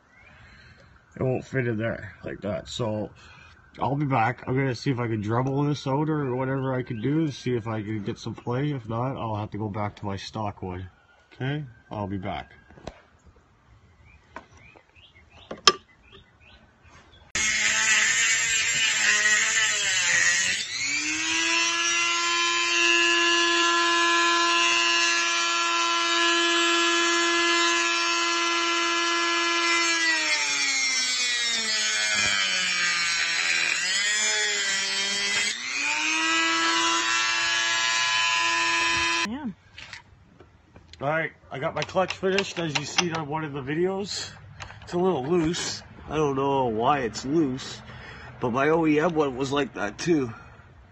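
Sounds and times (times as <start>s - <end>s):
rotary tool whining: 17.3s - 40.0s.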